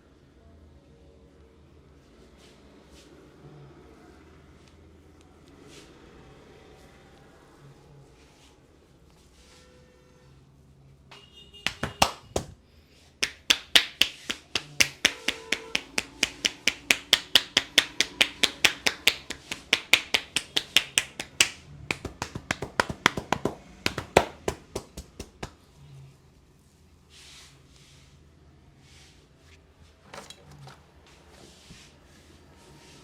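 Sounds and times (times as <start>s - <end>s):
hands slapping skin: 11.7s - 12.6s, 13.2s - 25.6s.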